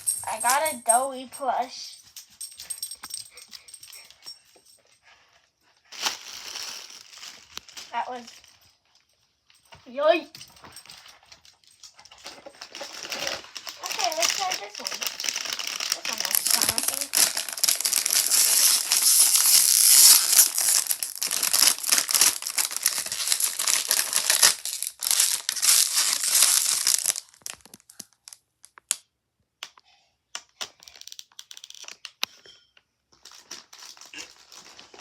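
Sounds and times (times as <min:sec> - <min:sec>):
crinkly packaging being torn: 0:05.9 - 0:08.6, 0:11.7 - 0:29.0, 0:30.6 - 0:32.3, 0:33.2 - 0:35.0
small clicks and rustles: 0:07.2 - 0:29.0, 0:29.7 - 0:35.0.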